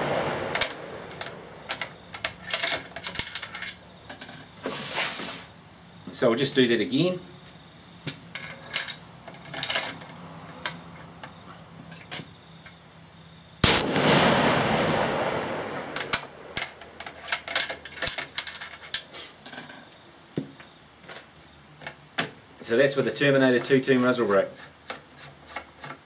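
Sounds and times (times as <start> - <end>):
rifle shot: 0.0 - 1.7, 13.6 - 16.6.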